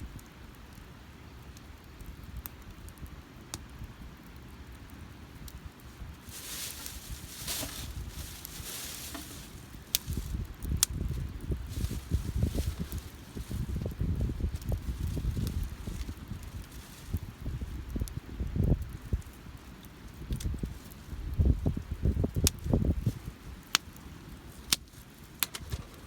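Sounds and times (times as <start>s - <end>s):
campfire crackling: 0.0s - 26.0s
fire hissing: 5.6s - 17.8s, 21.8s - 26.0s
low thuds: 6.3s - 10.4s.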